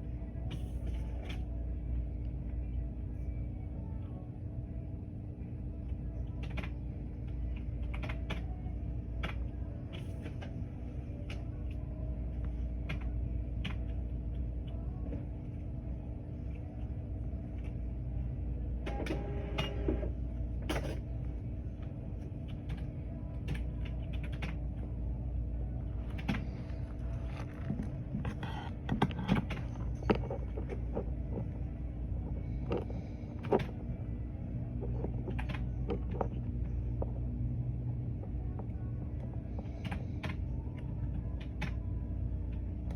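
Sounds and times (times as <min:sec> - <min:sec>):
steady low hum: 0:00.0 - 0:42.9
computer keyboard clicks: 0:23.5 - 0:24.6, 0:35.2 - 0:36.3.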